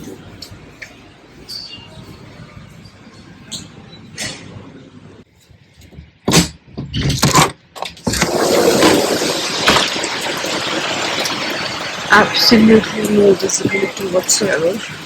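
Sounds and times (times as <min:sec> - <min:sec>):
heavy rain hissing: 0:08.1 - 0:15.0.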